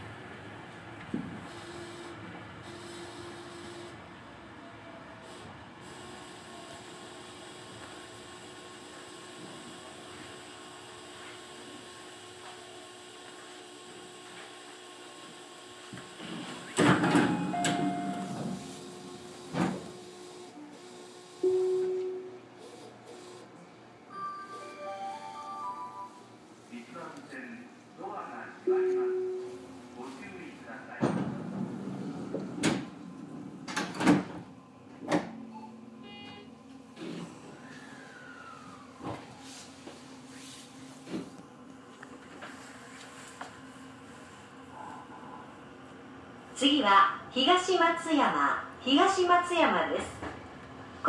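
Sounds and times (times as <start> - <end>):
electric train humming: 17.2 - 20.7, 24.1 - 27.1, 27.9 - 34.9.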